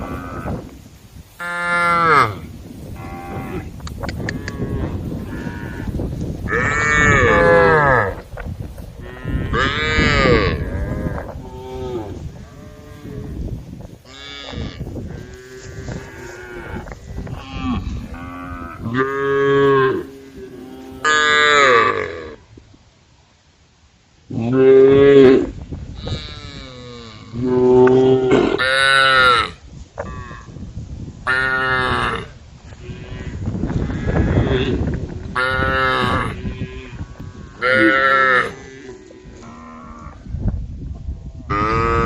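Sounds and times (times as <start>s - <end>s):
rustling noise: 0.0s - 21.1s, 29.6s - 31.2s
cattle mooing: 3.0s - 8.2s, 9.0s - 13.4s, 14.1s - 22.4s.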